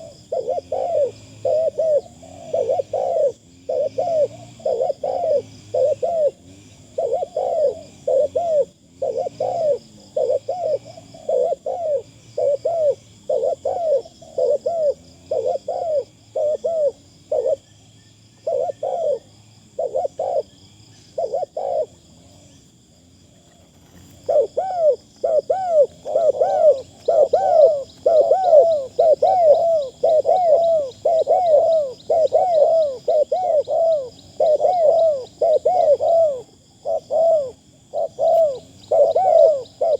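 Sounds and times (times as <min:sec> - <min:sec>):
dove cooing: 0:00.0 - 0:39.9.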